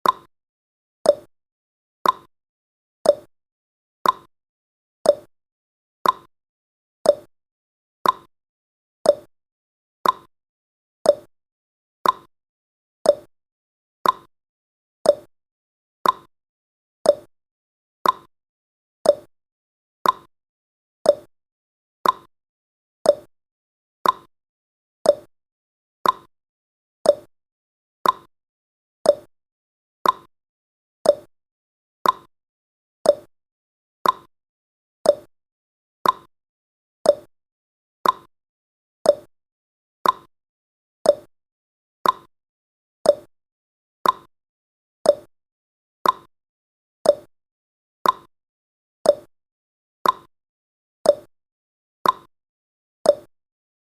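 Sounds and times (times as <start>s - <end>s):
clock-style ticking: 2.0s - 2.3s, 4.0s - 4.3s, 6.0s - 6.3s, 8.0s - 8.3s, 10.0s - 10.3s, 12.0s - 12.3s, 14.0s - 14.3s, 16.0s - 16.3s, 18.0s - 18.3s, 20.0s - 20.3s, 22.0s - 22.3s, 24.0s - 24.3s, 26.0s - 26.3s, 27.1s - 27.3s, 28.0s - 28.3s, 29.1s - 29.3s, 30.0s - 30.3s, 31.1s - 31.3s, 32.0s - 32.3s, 33.1s - 33.3s, 34.0s - 34.3s, 35.1s - 35.3s, 36.0s - 36.3s, 37.1s - 37.3s, 38.0s - 38.3s, 39.1s - 39.3s, 40.0s - 40.3s, 41.1s - 41.3s, 42.0s - 42.3s, 43.1s - 43.3s, 44.0s - 44.3s, 45.1s - 45.3s, 46.0s - 46.3s, 47.1s - 47.3s, 48.0s - 48.3s, 49.1s - 49.3s, 50.0s - 50.3s, 52.0s - 52.3s, 53.1s - 53.3s.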